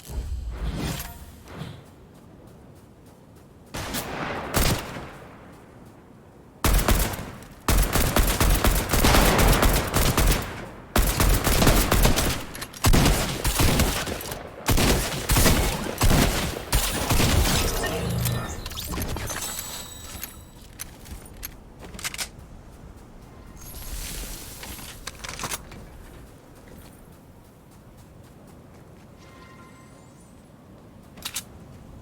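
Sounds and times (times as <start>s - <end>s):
video game gunfire: 6.6s - 19.9s.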